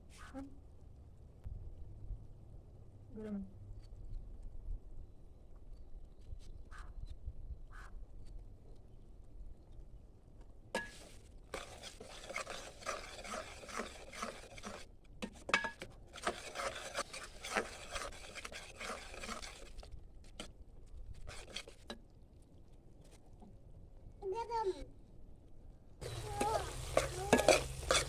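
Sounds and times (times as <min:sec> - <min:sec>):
utensil scraping cookware: 0:10.8 - 0:20.4, 0:21.2 - 0:22.0, 0:26.0 - 0:28.0.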